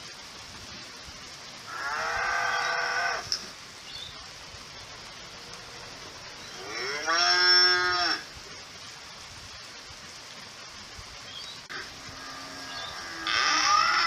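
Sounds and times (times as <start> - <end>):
cow mooing: 12.2 - 14.0.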